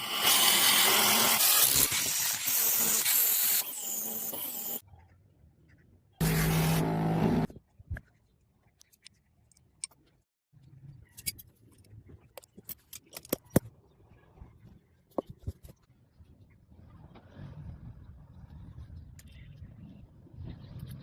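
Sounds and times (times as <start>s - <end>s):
loud burst of tool noise: 0.0s - 4.8s.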